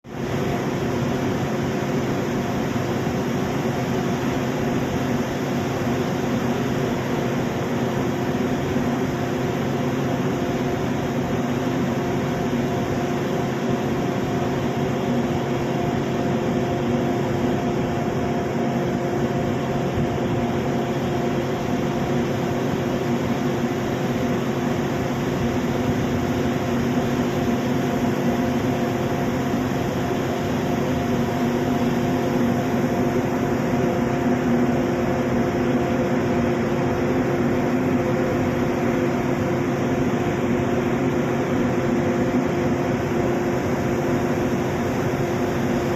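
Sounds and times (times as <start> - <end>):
ship engine drone: 0.2 - 45.9.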